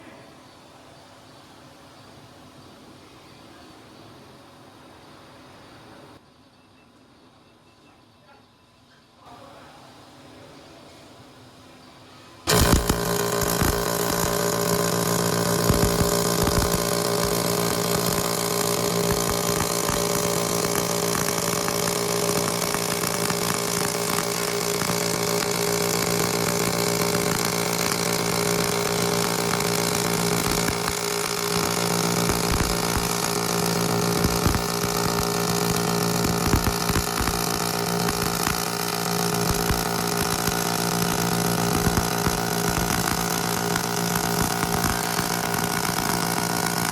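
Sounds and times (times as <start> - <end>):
arc welding buzz and crackle: 12.5 - 46.9.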